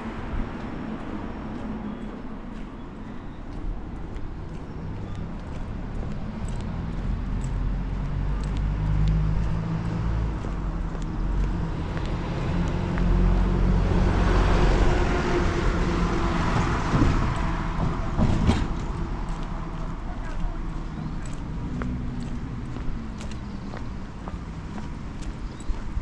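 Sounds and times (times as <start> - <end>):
train rumbling: 0.0 - 26.0.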